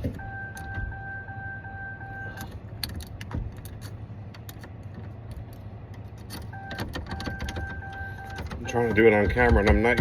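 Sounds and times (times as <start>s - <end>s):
electronic warning chime: 0.2s - 2.4s, 6.6s - 9.4s.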